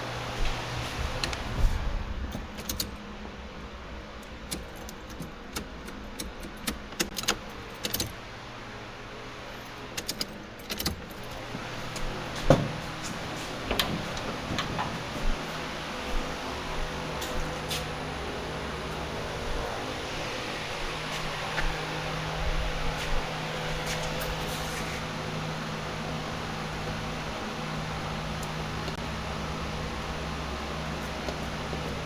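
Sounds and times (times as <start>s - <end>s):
metallic clicks and clinks: 10.0s - 11.4s.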